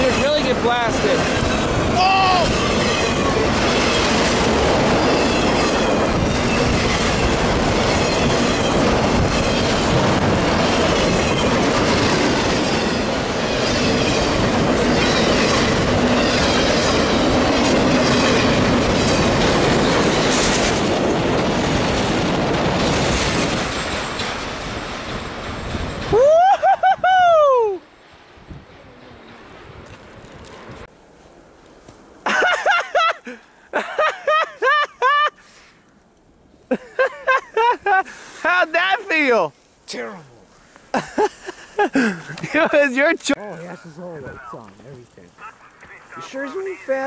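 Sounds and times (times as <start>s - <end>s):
wheels clicking over rail joints: 0.0s - 26.2s
freight train passing: 0.0s - 26.3s, 27.0s - 39.8s, 40.4s - 47.0s.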